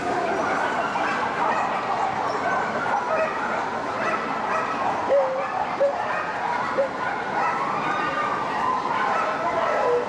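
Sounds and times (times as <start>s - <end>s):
background hubbub: 0.0s - 10.0s
dogs yipping and barking: 0.4s - 7.7s.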